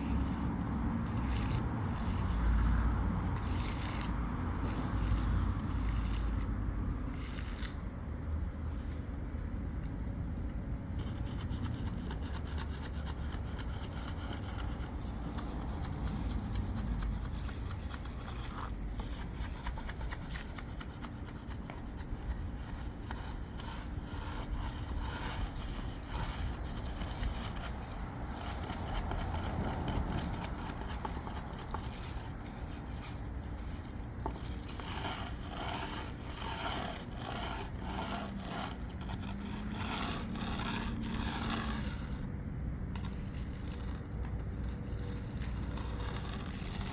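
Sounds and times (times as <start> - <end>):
tools scraping fresh concrete: 0.0 - 8.0, 11.0 - 42.3, 43.0 - 46.9.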